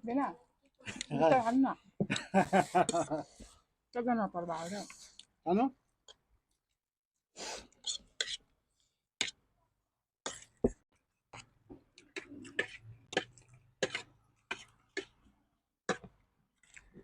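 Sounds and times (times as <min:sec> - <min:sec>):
people sniffing sharply: 0:07.4 - 0:07.8.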